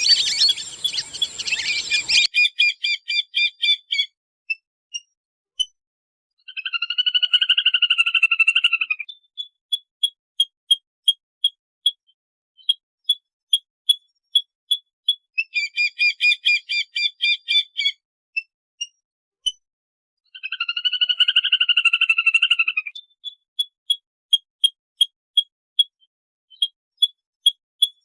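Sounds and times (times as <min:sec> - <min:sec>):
ducks whistling: 0:00.0 - 0:02.3
rapid chattering calls: 0:00.0 - 0:02.7.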